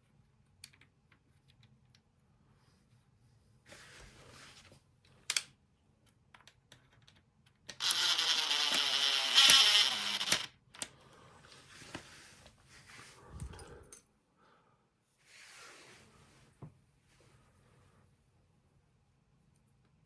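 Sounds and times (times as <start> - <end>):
cordless screwdriver running: 7.8 - 10.5.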